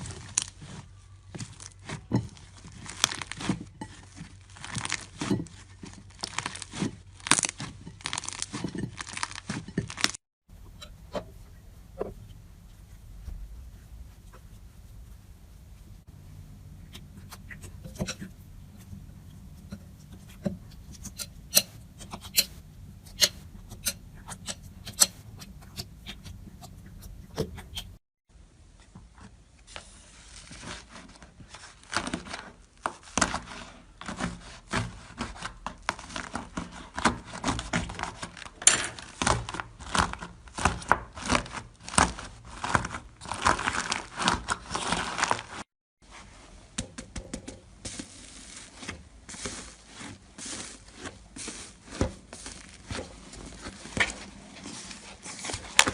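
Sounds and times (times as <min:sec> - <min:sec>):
slime popping and crackling: 0:05.9 - 0:10.2.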